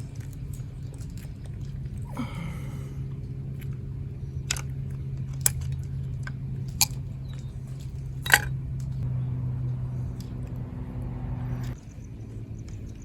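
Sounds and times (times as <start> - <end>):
steady low hum: 0.0 - 13.0
crimp tool clicking and crunching: 5.3 - 7.0, 8.2 - 8.5.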